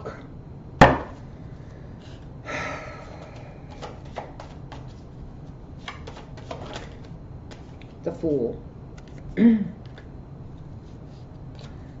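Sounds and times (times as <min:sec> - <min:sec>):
cards clicking and tapping: 0:03.2 - 0:05.0, 0:05.8 - 0:07.9, 0:09.0 - 0:10.1.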